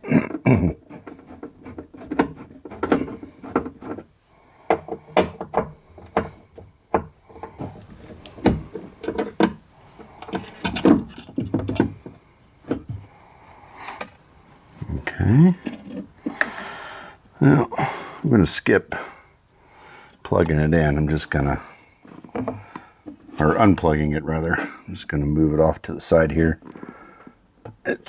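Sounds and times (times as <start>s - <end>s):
clicks knocks and rubbing: 0.3s - 13.1s, 22.0s - 24.0s.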